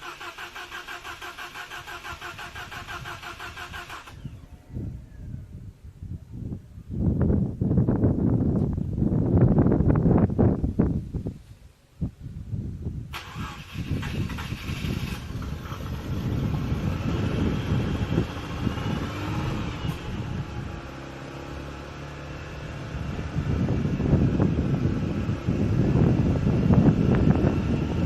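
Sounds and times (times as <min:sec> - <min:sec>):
rotary engine revving: 0:00.0 - 0:04.4, 0:13.2 - 0:28.0.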